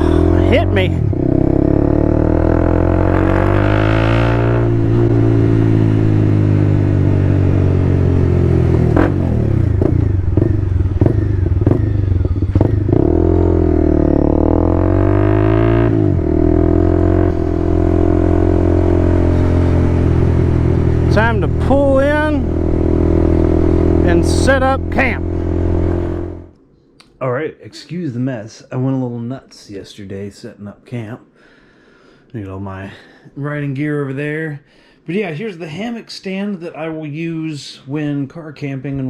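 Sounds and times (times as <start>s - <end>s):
motorcycle engine running: 0.0s - 26.6s.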